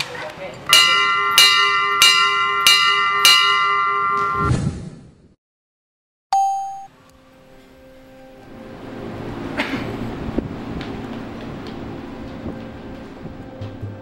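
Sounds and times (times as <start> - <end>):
school bell ringing: 0.7 - 4.5
short high ding: 0.7 - 4.6, 6.4 - 6.9.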